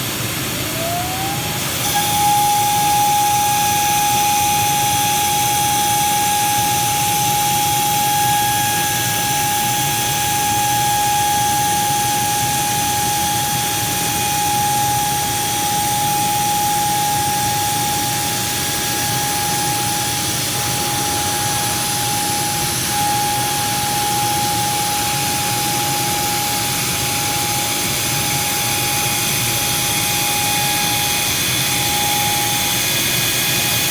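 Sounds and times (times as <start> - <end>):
electric motor whining: 0.7 - 27.6.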